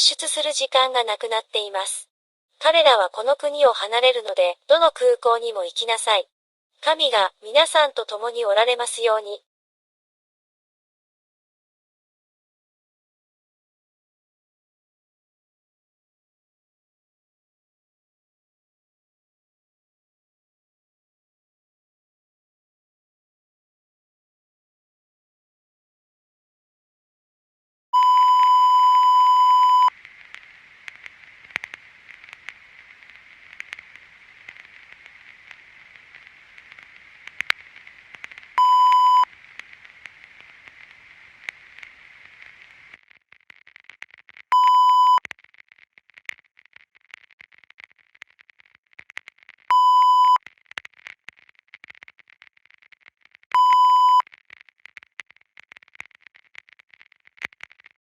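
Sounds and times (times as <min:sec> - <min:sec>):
crackling static: 0:02.6 - 0:06.2, 0:06.8 - 0:09.4, 0:28.0 - 0:58.0
electronic beep tone: 0:28.0 - 0:29.9, 0:38.6 - 0:39.3, 0:44.5 - 0:45.2, 0:49.7 - 0:50.4, 0:53.6 - 0:54.2.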